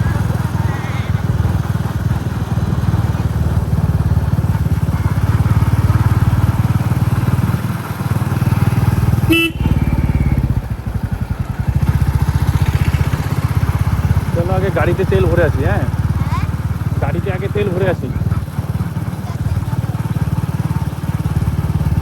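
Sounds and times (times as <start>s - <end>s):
motorcycle engine thumping: 0.0s - 22.0s
horn beep: 9.2s - 10.5s.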